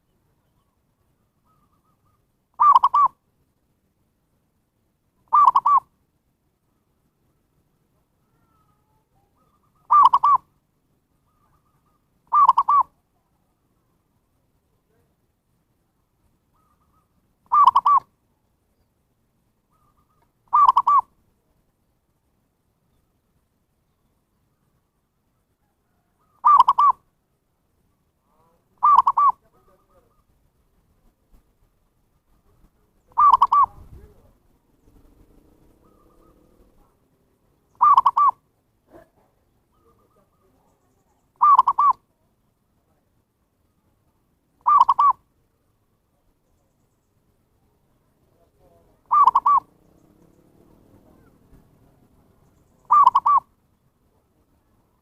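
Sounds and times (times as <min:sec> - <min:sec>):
dove cooing: 0:01.4 - 0:03.2, 0:05.3 - 0:05.9, 0:08.2 - 0:10.5, 0:11.3 - 0:13.0, 0:16.5 - 0:18.1, 0:19.7 - 0:21.1, 0:25.6 - 0:27.0, 0:28.3 - 0:30.2, 0:33.1 - 0:36.9, 0:37.7 - 0:39.1, 0:39.7 - 0:42.0, 0:44.6 - 0:45.2, 0:48.6 - 0:51.7, 0:52.8 - 0:53.5.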